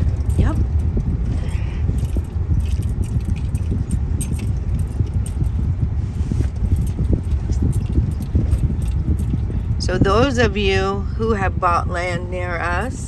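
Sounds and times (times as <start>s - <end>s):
small rattles and clicks: 0.0s - 9.9s
car cabin road rumble: 0.0s - 13.0s.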